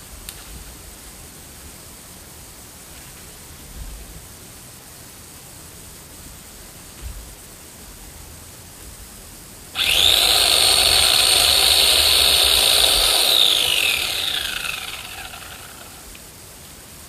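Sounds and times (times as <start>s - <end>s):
electric chainsaw whining: 9.8s - 16.2s.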